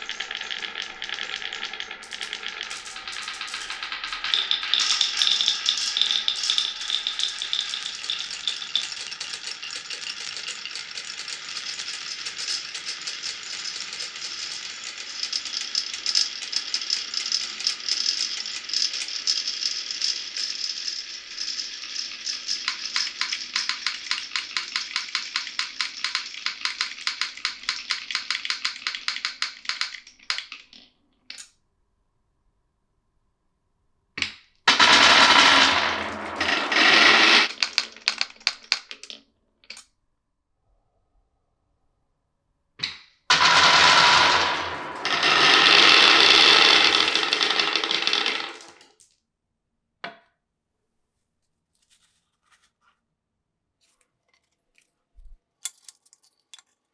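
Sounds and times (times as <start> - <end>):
marbles clattering down a run: 0.0 - 30.7, 34.7 - 39.1, 43.3 - 49.0.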